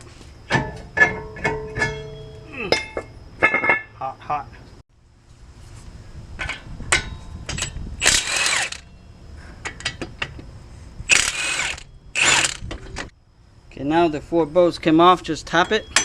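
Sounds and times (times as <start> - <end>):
ratchet wrench clicking: 7.5 - 8.9.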